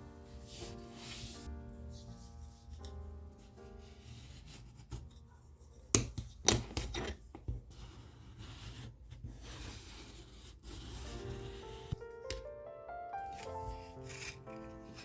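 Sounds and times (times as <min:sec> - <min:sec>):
paper rubbing and scraping: 0:00.3 - 0:02.8, 0:06.8 - 0:12.0, 0:13.3 - 0:15.0.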